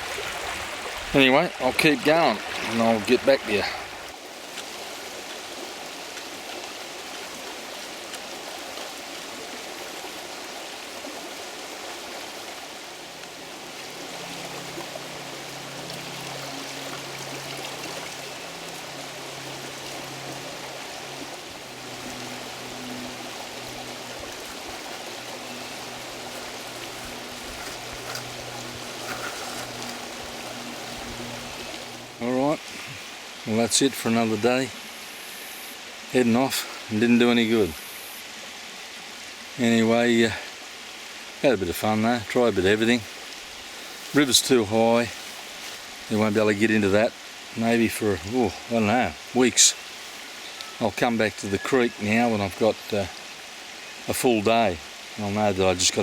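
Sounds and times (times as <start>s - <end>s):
creek water rushing: 0.0s - 56.0s.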